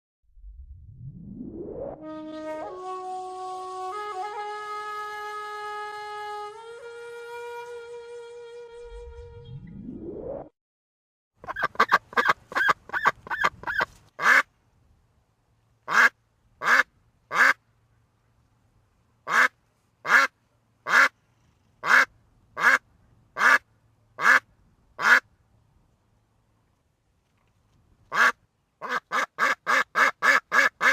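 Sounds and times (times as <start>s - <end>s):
duck quacking: 11.4s - 14.5s, 15.9s - 17.6s, 19.3s - 21.2s, 21.8s - 22.8s, 23.4s - 25.2s, 28.1s - 30.9s.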